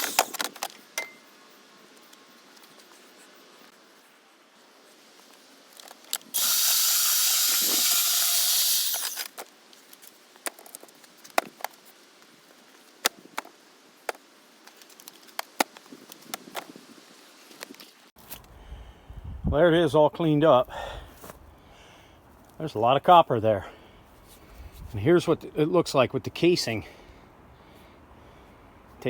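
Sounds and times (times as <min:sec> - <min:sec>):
loud steady hiss: 0:04.4 - 0:09.3.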